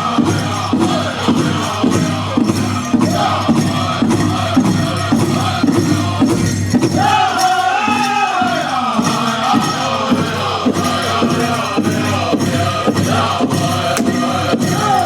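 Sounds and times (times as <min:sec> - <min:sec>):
drum group singing: 0:00.0 - 0:15.0
big drum beating: 0:09.0 - 0:15.0.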